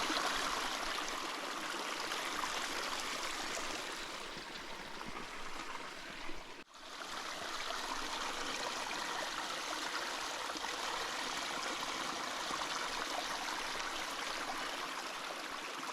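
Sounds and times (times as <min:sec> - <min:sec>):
stream water running: 0:00.0 - 0:15.9.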